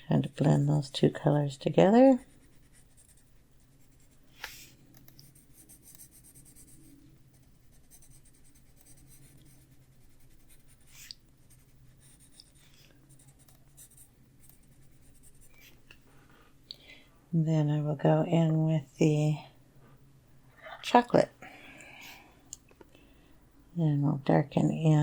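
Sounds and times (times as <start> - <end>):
pencil scratching on paper: 2.1 - 4.3, 5.2 - 15.8.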